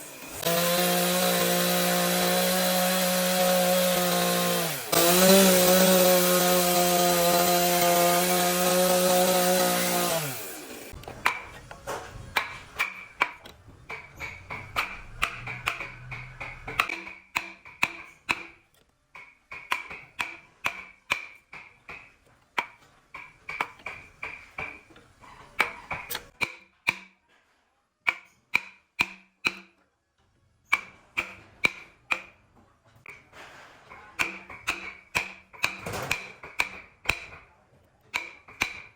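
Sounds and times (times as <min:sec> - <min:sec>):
power saw running: 0:00.0 - 0:11.1.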